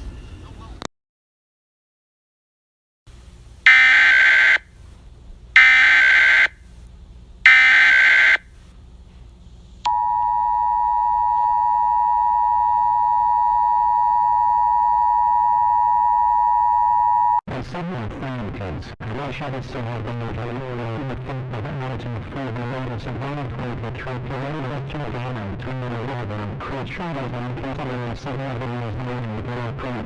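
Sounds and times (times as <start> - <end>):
two-tone attention signal: 3.7 - 4.6, 5.6 - 6.5, 7.5 - 8.4, 9.9 - 17.4.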